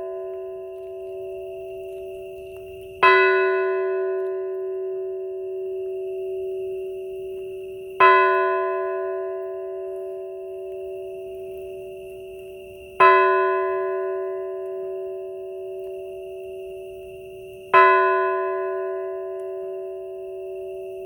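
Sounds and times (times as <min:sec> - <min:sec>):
church bell tolling: 0:00.0 - 0:07.4, 0:08.0 - 0:11.2, 0:13.0 - 0:15.8, 0:17.7 - 0:21.0.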